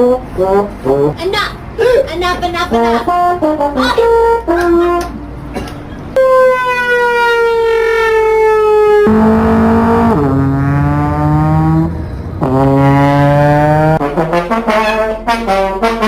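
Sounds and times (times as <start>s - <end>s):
trombone sliding notes: 8.8s - 16.0s.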